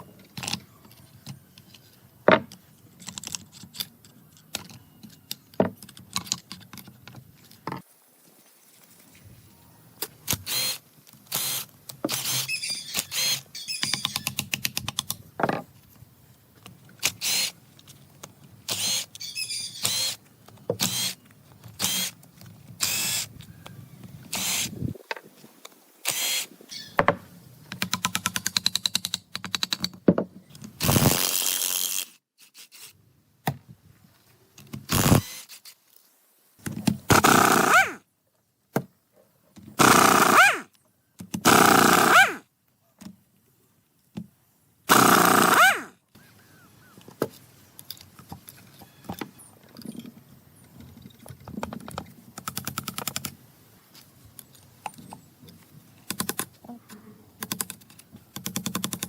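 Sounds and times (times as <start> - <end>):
power tool bursts: 18.7 - 20.2, 37.1 - 38.0, 39.8 - 40.7, 41.4 - 42.4, 44.9 - 46.0.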